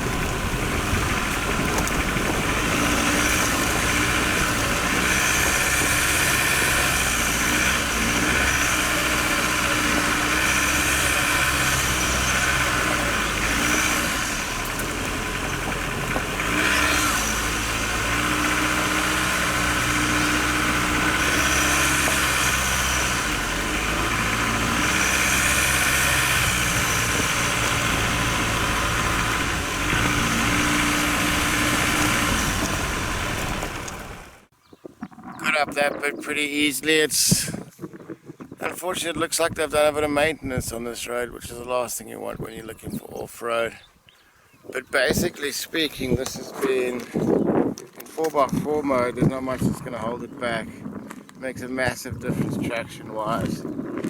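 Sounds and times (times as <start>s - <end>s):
diesel engine running under load: 0.0s - 34.5s.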